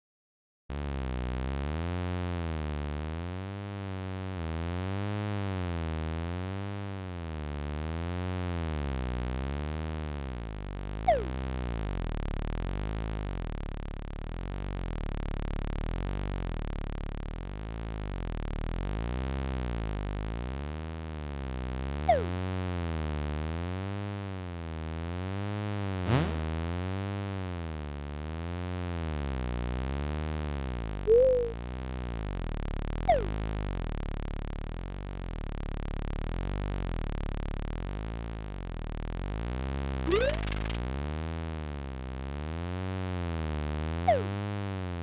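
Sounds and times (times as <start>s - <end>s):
falling zip effect: 11.1s - 11.4s, 26.1s - 26.7s, 31.1s - 31.6s, 33.1s - 33.4s, 40.1s - 40.8s
synthesized buzzing drone: 31.1s - 31.6s, 40.1s - 40.8s.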